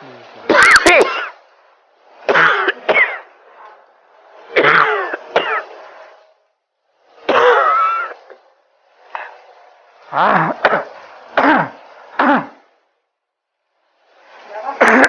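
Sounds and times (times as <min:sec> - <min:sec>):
man coughing: 0:00.6 - 0:01.3.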